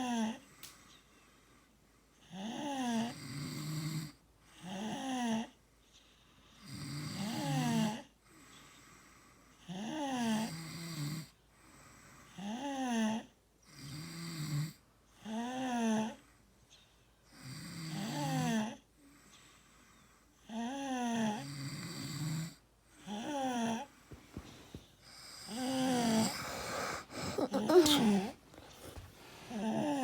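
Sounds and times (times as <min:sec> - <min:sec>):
person snoring: 0:23.3 - 0:30.0.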